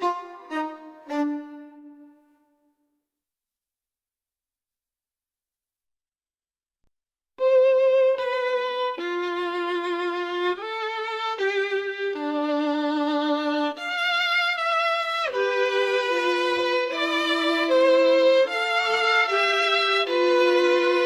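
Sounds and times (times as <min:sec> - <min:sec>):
violin playing slow melody: 0:00.0 - 0:02.4, 0:07.4 - 0:21.0.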